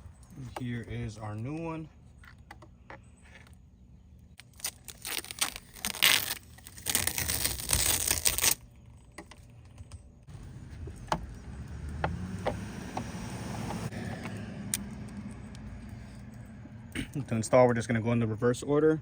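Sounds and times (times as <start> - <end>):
packaging crinkling and tearing: 4.4 - 8.6.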